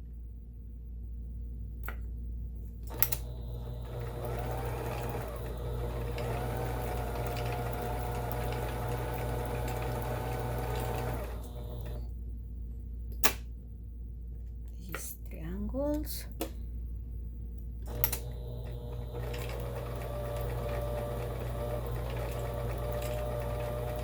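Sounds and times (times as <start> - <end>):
sewing machine motor running: 3.0 - 12.1, 17.9 - 24.0.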